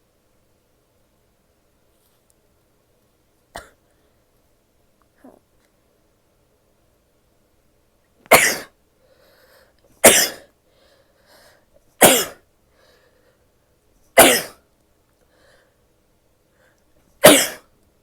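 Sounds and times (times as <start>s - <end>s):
faint breathing: 9.0s - 9.9s, 10.6s - 11.8s, 12.7s - 13.7s, 15.2s - 17.0s.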